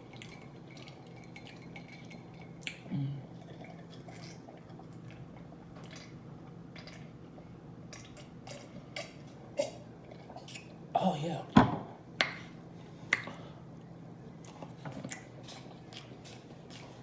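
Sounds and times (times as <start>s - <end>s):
faint steady hum: 0.0s - 17.0s
chewing with wet mouth clicks: 13.1s - 17.0s.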